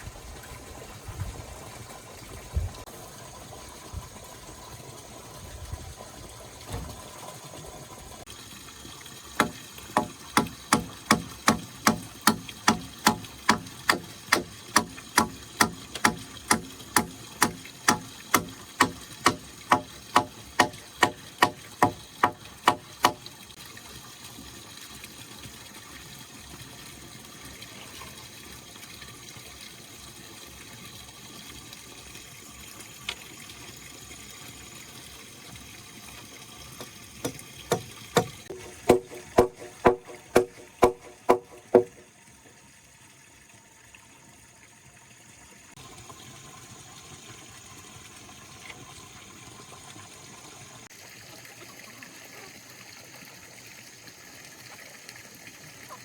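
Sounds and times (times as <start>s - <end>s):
rushing water: 0.0s - 43.9s
hand tool striking: 9.4s - 23.2s, 37.2s - 42.0s.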